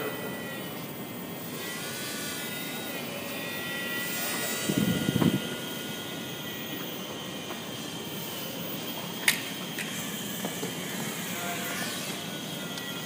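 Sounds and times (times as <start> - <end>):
toy drone propellers whining: 0.0 - 13.0
wind rumble on microphone: 4.7 - 5.4.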